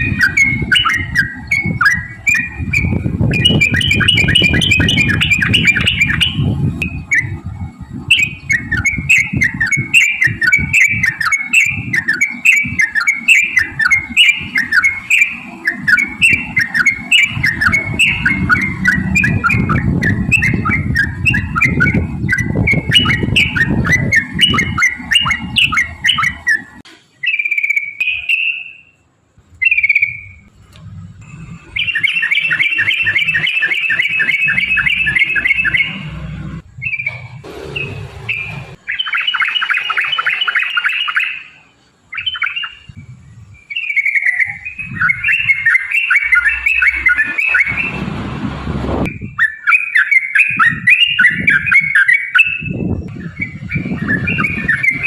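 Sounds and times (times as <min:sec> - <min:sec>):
bird singing whistled trill: 0:00.0 - 0:29.0, 0:29.6 - 0:30.5, 0:31.2 - 0:48.0, 0:49.0 - 0:55.0
low crackling noise and clicks: 0:30.4 - 0:31.4.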